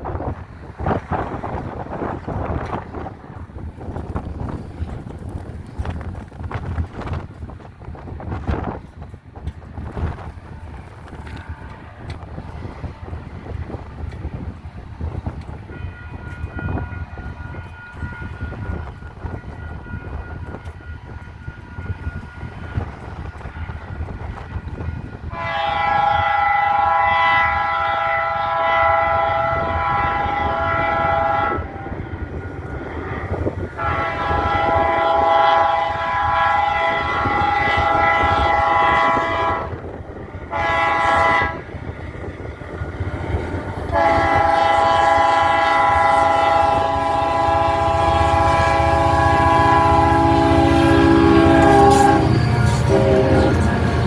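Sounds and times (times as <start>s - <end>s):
low train rumble: 0.0s - 54.0s
wind buffeting microphone: 0.0s - 54.0s
locomotive air horn blasts: 10.5s - 13.5s, 15.7s - 42.0s, 43.8s - 54.0s.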